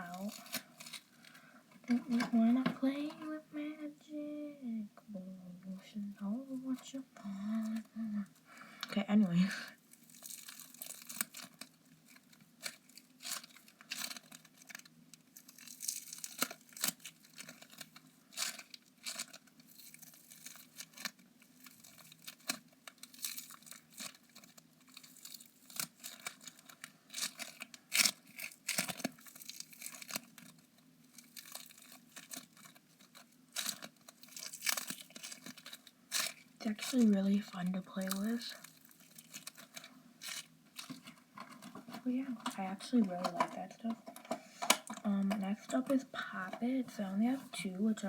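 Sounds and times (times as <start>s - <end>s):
foam compound crackling: 9.0s - 41.1s.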